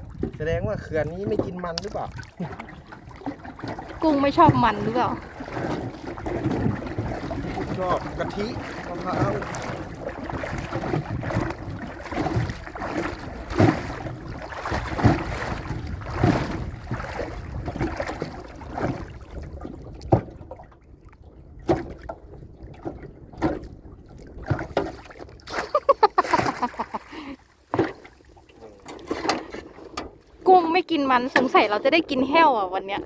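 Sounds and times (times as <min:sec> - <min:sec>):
water splashing around boat: 0:00.0 - 0:33.0
knocks against boat hull: 0:20.0 - 0:20.4, 0:27.7 - 0:28.1.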